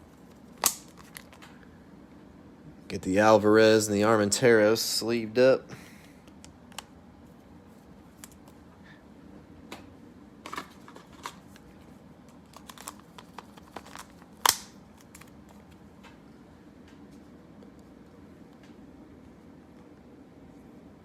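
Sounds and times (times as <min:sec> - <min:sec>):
cards rustling and clicking: 0:00.0 - 0:01.6, 0:07.7 - 0:08.6, 0:10.5 - 0:16.2.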